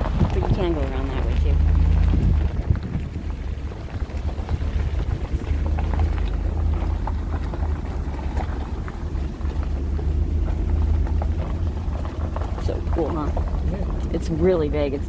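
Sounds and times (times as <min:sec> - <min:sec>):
ticks and rattles: 0:00.0 - 0:15.0
vehicle driving slowly: 0:00.0 - 0:15.0.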